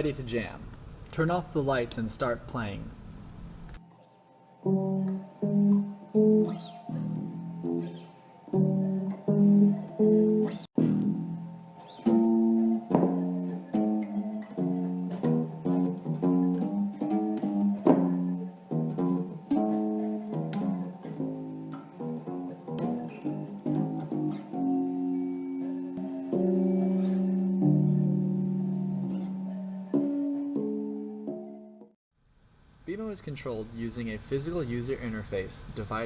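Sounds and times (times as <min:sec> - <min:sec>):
guitar riff: 0:04.6 - 0:31.9.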